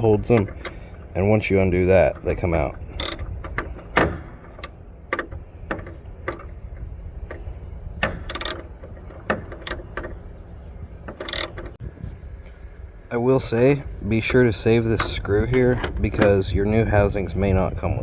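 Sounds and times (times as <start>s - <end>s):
low rumble: 0.0s - 18.0s
socket ratchet clicking: 2.9s - 6.5s, 8.0s - 8.7s, 9.3s - 10.1s, 11.1s - 11.8s.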